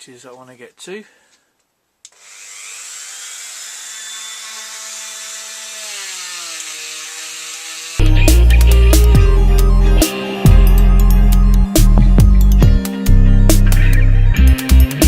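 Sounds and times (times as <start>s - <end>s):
rotary power tool whining: 2.1s - 8.0s.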